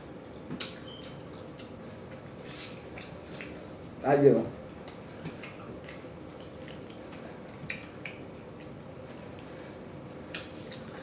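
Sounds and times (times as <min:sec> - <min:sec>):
mouth chewing wet smacks: 0:00.4 - 0:03.6, 0:04.8 - 0:09.5, 0:10.3 - 0:11.0.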